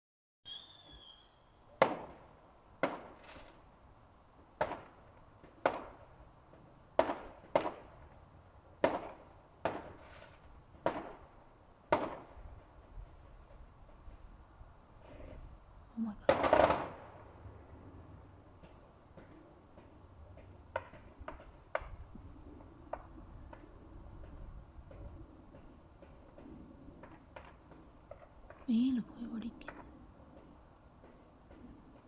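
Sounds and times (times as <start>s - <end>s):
distant fireworks bangs: 0.5s - 3.6s, 4.5s - 8.1s, 8.8s - 14.2s, 16.1s - 17.4s.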